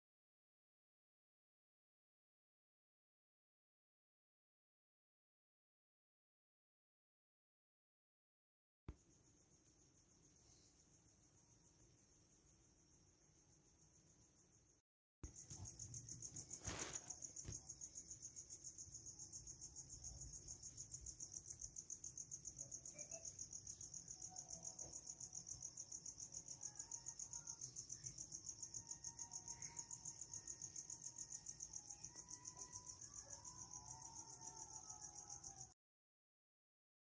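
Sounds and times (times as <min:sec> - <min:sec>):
crickets chirring: 0:09.0 - 0:35.7.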